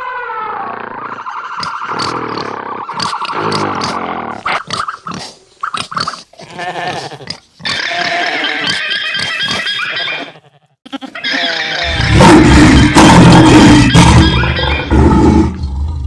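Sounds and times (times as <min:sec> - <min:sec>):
pig grunting and squealing: 0:00.0 - 0:16.0.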